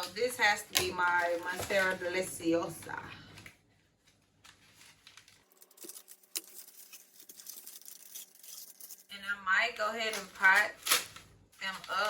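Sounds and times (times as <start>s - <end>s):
plant packaging rustling and clicking: 0.0s - 2.2s, 3.4s - 9.1s, 10.0s - 12.0s.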